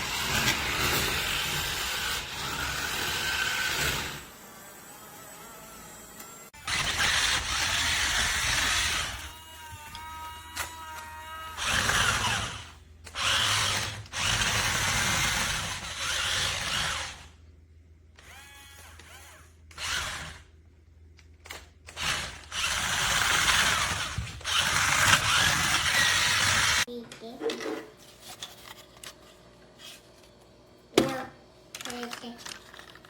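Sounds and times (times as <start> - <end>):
toy truck electric motor whirring: 0.0 - 17.4, 18.2 - 20.6, 21.4 - 26.9.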